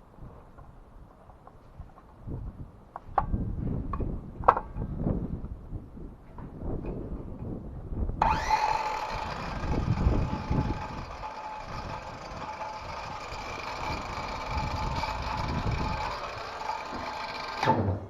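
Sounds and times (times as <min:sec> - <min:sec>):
circular saw motor whine: 0:08.2 - 0:18.0.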